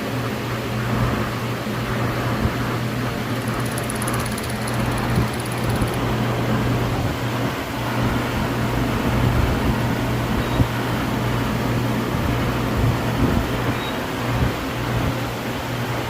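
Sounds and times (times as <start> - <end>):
machine running with low hum: 1.9 - 7.0.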